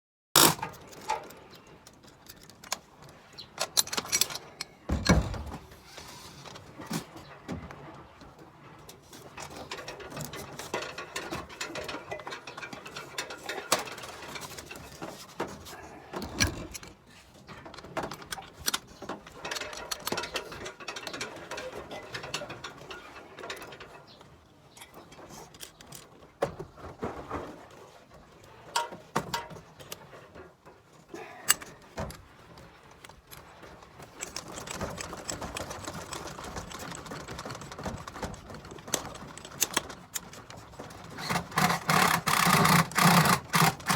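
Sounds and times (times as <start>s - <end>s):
hand tool clicking and rattling: 3.6s - 5.2s, 17.8s - 23.9s, 34.1s - 43.9s.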